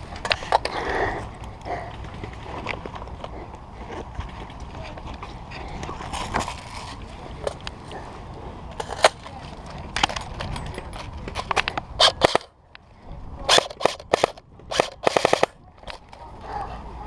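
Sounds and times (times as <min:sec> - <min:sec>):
airsoft guns firing: 0:12.0 - 0:12.5, 0:13.5 - 0:15.6.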